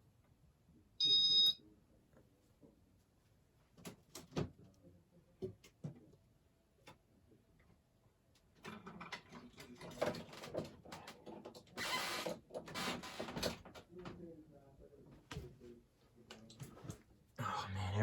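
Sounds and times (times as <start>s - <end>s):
clatter and rustling: 8.6s - 14.2s.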